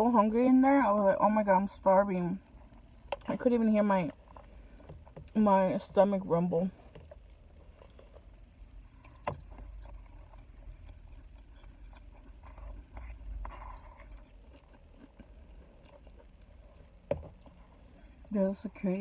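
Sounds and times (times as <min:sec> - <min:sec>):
low steady rumble: 0:00.0 - 0:19.0
quiet chewing: 0:06.7 - 0:18.3.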